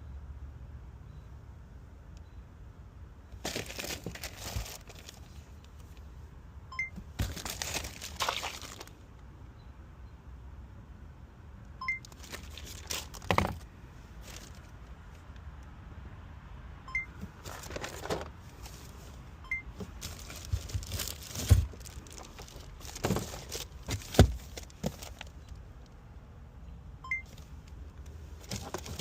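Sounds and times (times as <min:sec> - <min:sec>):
rustling and crinkling: 0:03.4 - 0:06.1, 0:07.0 - 0:09.0, 0:12.0 - 0:15.4, 0:17.2 - 0:25.8, 0:27.3 - 0:29.0.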